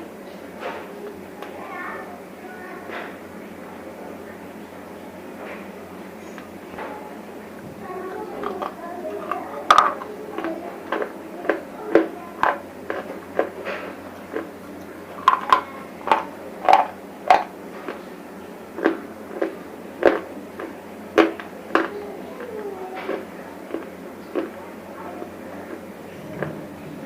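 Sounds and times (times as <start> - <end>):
crunchy chips being chewed: 8.4 - 18.1, 18.7 - 26.6.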